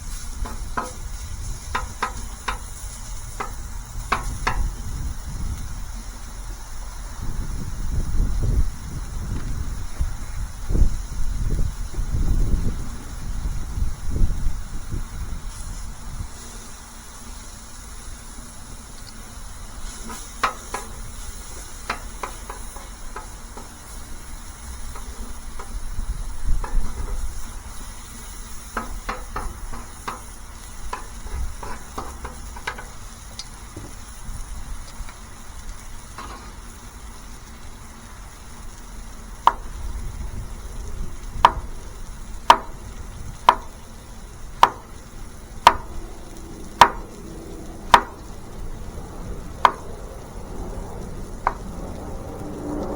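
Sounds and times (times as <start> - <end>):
food sizzling on a griddle: 0.0 - 52.9
utensils scraping a griddle: 0.1 - 4.7, 19.8 - 33.0.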